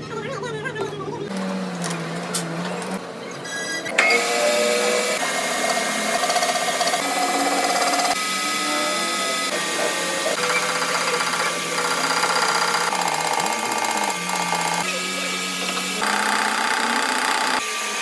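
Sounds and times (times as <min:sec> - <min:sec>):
machine tool cutting steel: 0:03.8 - 0:18.0.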